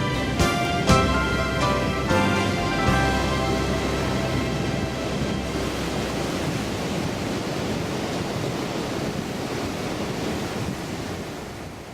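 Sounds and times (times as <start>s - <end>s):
song music: 0.0s - 6.4s
ocean surf washing: 0.0s - 11.9s.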